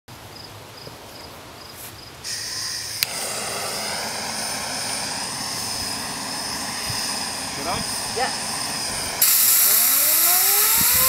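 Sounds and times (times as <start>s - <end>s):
jet noisemaker hissing whine: 2.2s - 11.0s
sharp crack: 2.9s - 5.3s.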